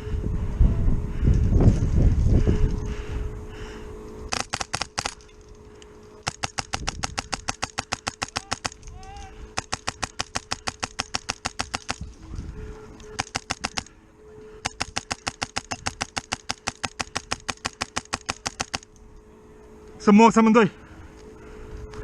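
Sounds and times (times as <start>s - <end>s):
airsoft gun automatic bursts: 4.3s - 5.2s, 6.2s - 8.9s, 9.6s - 12.0s, 13.1s - 13.9s, 14.6s - 18.9s.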